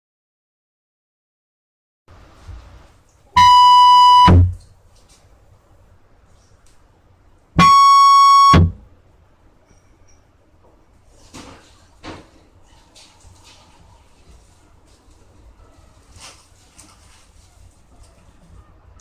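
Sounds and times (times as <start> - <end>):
buzzy electronic keyboard tones: 3.4 - 4.6, 7.6 - 8.8.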